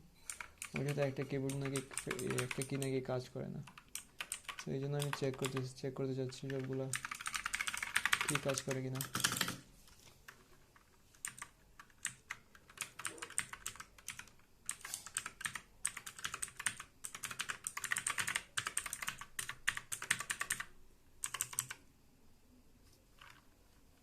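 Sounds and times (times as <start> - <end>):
mechanical keyboard keys clicking: 0.3 - 2.9, 6.5 - 9.6, 11.2 - 21.8.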